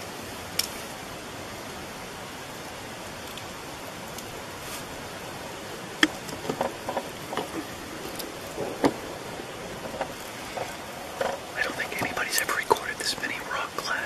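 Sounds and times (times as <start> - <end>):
steady hiss: 0.0 - 14.0
campfire crackling and popping: 3.1 - 14.0.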